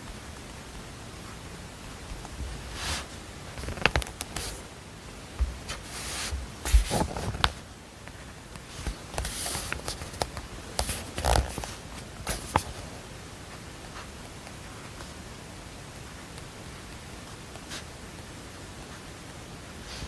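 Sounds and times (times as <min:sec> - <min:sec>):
faint steady hiss: 0:00.0 - 0:20.0
paper rustling: 0:05.6 - 0:07.6, 0:08.7 - 0:12.9.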